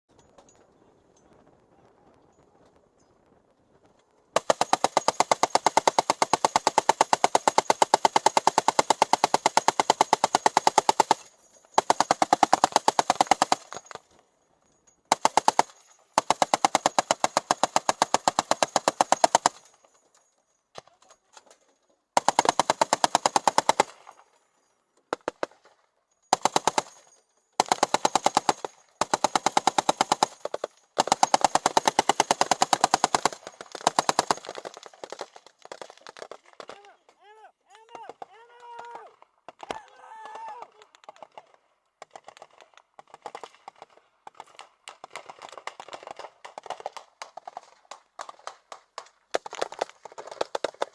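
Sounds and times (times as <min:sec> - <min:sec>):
heavy machine gun bursts: 0:04.4 - 0:14.0, 0:15.1 - 0:19.8, 0:22.2 - 0:24.1, 0:26.3 - 0:36.8.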